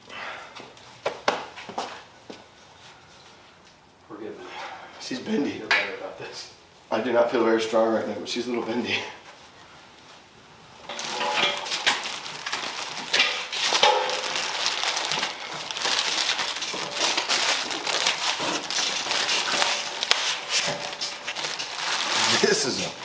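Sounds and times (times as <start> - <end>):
packaging crinkling and rustling: 10.9 - 23.0.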